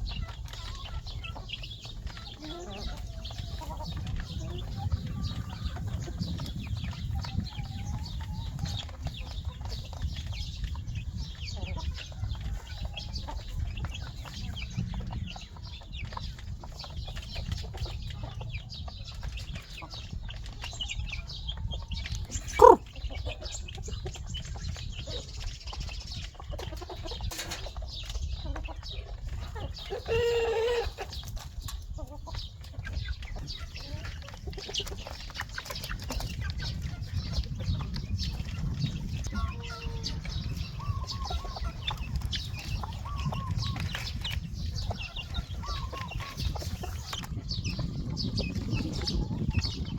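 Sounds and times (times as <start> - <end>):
chickens clucking: 0.0 - 49.9
chicken squawk: 22.2 - 23.4, 29.5 - 31.1, 44.8 - 47.2
loud chicken call: 22.4 - 22.8.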